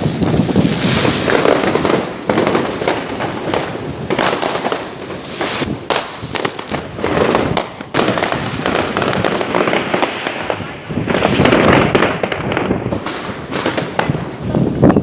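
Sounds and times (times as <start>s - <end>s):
firework whistle falling in pitch: 0.0s - 1.0s
fireworks crackling and banging: 0.0s - 15.0s.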